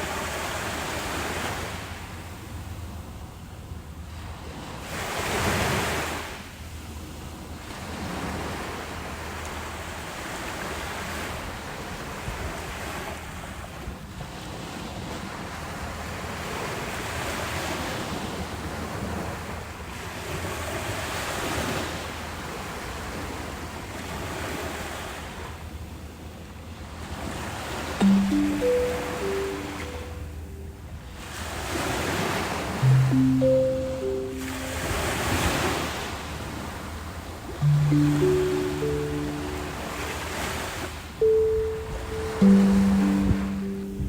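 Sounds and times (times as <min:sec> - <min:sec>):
ocean waves washing in: 0:28.0 - 0:30.8, 0:32.8 - 0:36.0, 0:37.6 - 0:44.0
soft instrumental notes: 0:28.0 - 0:31.1, 0:32.8 - 0:35.9, 0:37.6 - 0:44.0.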